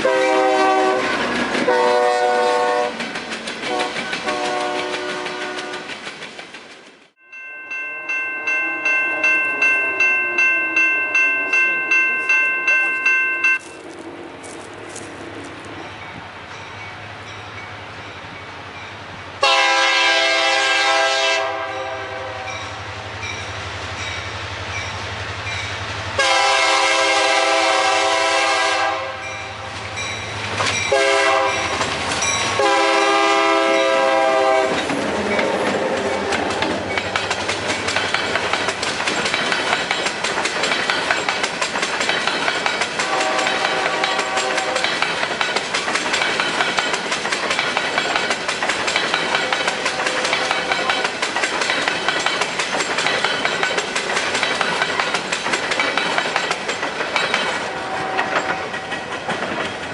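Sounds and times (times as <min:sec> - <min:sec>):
locomotive air horn blasts: 0:00.0 - 0:03.0, 0:03.7 - 0:05.9, 0:19.4 - 0:22.8, 0:26.2 - 0:29.6, 0:30.9 - 0:31.8, 0:32.6 - 0:34.8, 0:43.0 - 0:44.9, 0:57.6 - 0:58.7
train wheels clicking over rail joints: 0:00.0 - 0:07.2, 0:29.7 - 0:59.9.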